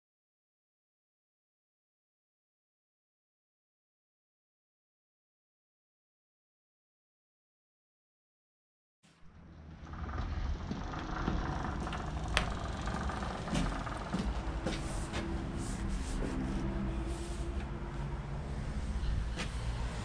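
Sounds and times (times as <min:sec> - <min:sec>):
dirt bike engine idling: 0:09.4 - 0:14.9
sharp clicks and knocks: 0:10.0 - 0:15.3.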